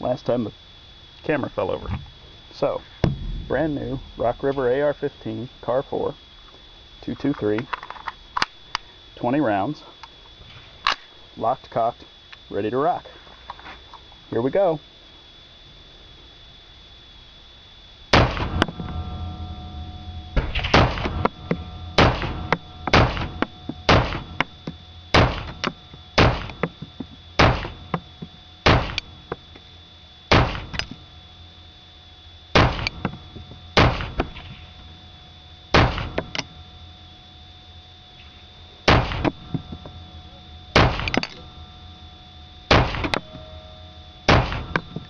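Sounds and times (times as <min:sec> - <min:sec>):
rifle shots: 0:18.2 - 0:18.8, 0:20.4 - 0:21.3, 0:22.0 - 0:24.4, 0:25.1 - 0:26.6, 0:27.4 - 0:27.8, 0:28.6 - 0:29.0, 0:30.3 - 0:30.7, 0:32.6 - 0:32.9, 0:33.8 - 0:34.2, 0:35.7 - 0:36.2, 0:40.8 - 0:41.2, 0:42.7 - 0:43.1.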